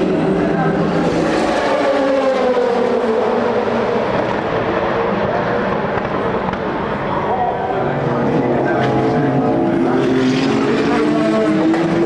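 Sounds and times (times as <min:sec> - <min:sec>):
race car engine passing: 0:00.0 - 0:06.5, 0:07.4 - 0:12.0.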